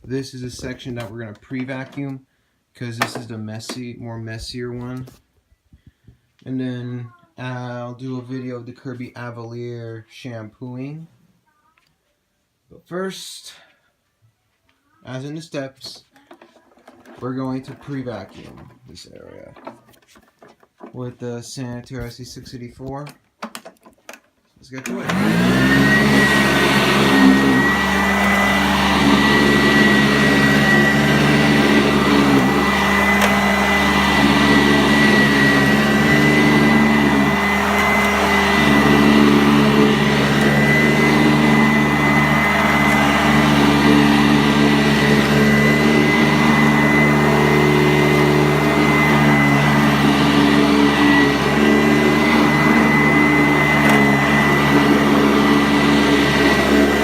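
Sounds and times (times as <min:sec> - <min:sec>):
vacuum cleaner running: 0:24.8 - 0:57.0.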